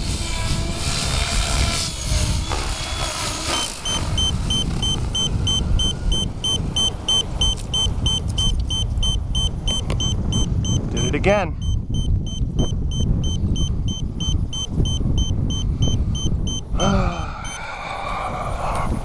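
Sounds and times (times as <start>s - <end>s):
high electronic beeper alarm: 3.6s - 16.7s, 17.4s - 17.6s
steady low rumble: 3.8s - 19.0s.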